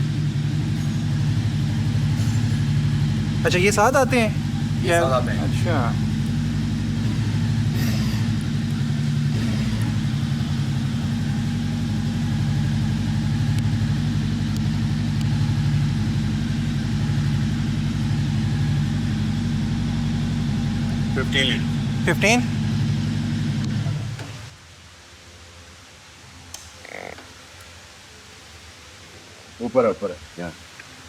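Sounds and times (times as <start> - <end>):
motorcycle engine idling: 0.0 - 24.5.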